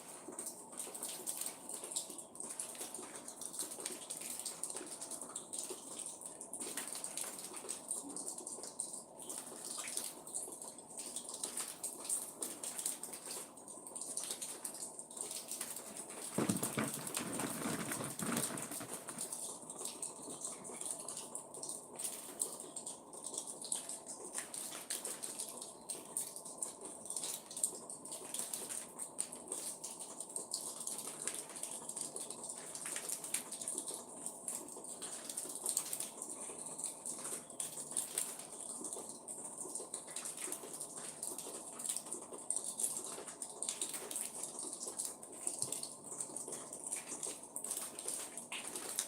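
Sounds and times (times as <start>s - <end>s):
rustling noise: 15.8s - 19.4s.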